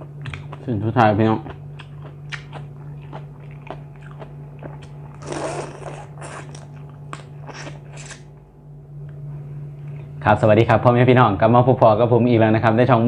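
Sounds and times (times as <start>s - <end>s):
crunching and chewing crisp food: 0.0s - 8.4s.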